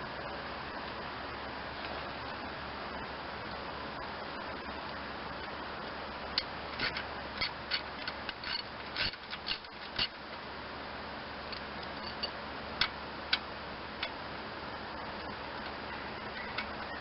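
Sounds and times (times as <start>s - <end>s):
metal tools clicking on bolts: 6.8s - 10.2s, 11.5s - 13.4s.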